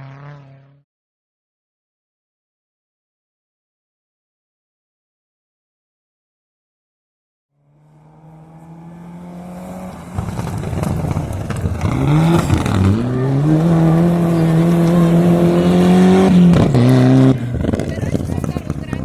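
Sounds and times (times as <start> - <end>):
rally car engine approaching: 0.0 - 0.8, 7.6 - 19.0.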